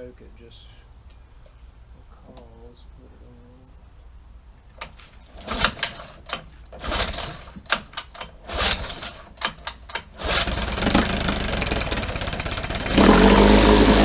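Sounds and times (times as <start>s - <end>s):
starter cord pulls: 4.8s - 14.0s
outboard motor running: 10.2s - 14.0s.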